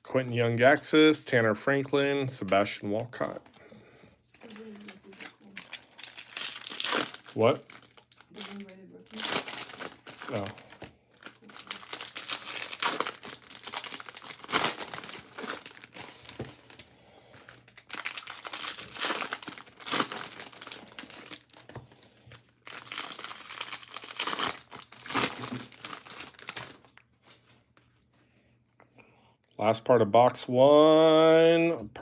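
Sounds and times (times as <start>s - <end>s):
card wrappers crinkling: 4.3s - 27.8s.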